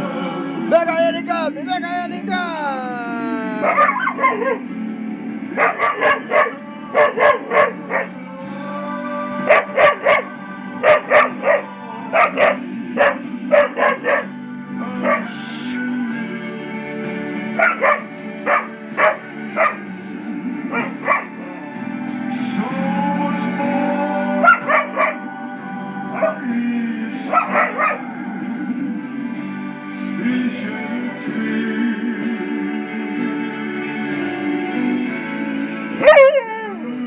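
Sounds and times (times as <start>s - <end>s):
background music: 0.0s - 37.0s
dog barking: 3.6s - 4.7s, 5.5s - 8.2s, 9.4s - 14.3s, 15.0s - 15.5s, 17.6s - 19.9s, 20.7s - 21.6s, 24.4s - 25.3s, 26.1s - 26.5s, 27.3s - 28.1s, 36.0s - 36.7s.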